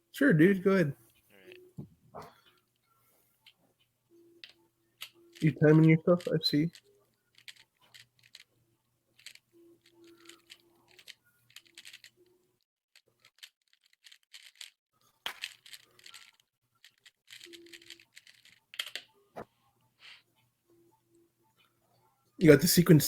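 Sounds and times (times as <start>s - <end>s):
puzzle cube clicking: 4.4s - 8.5s, 9.2s - 12.2s, 13.2s - 19.1s.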